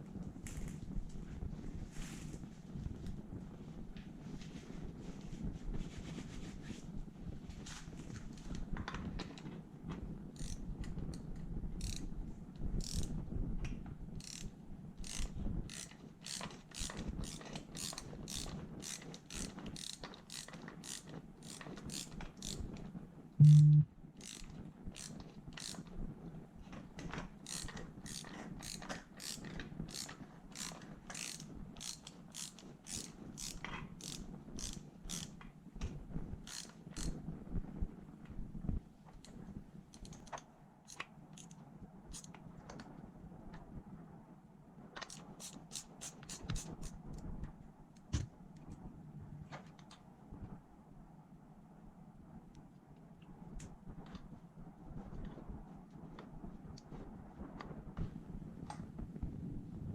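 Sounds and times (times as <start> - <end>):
ratchet wrench clicking: 10.4 - 10.6, 11.8 - 12.1, 12.8 - 13.1, 14.2 - 22.6, 23.4 - 25.8, 27.4 - 35.3, 36.5 - 37.1, 40.9 - 42.3, 45.0 - 47.0
loud low buzz: 23.4 - 23.9.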